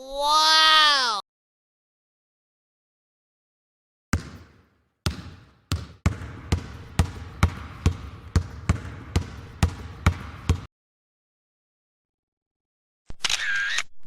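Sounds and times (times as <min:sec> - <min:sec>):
basketball bouncing on hard floor: 0:04.1 - 0:10.7.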